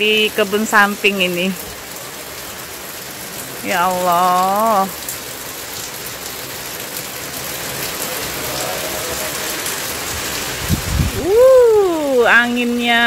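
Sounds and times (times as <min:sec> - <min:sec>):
torrential rain hissing: 0:00.0 - 0:13.0.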